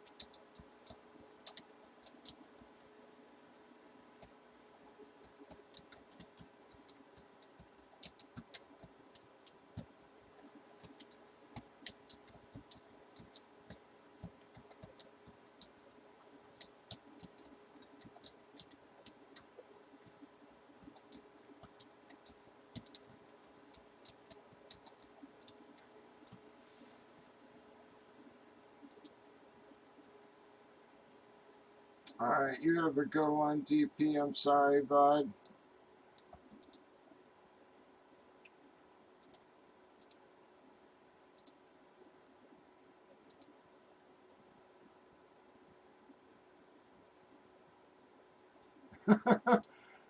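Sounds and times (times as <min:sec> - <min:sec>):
faint clicks and taps: 0:00.0 - 0:03.2, 0:04.2 - 0:26.9, 0:28.2 - 0:29.2, 0:35.3 - 0:36.9, 0:38.4 - 0:40.3, 0:41.4 - 0:42.1, 0:43.3 - 0:43.6
low steady hum: 0:00.0 - 0:50.0.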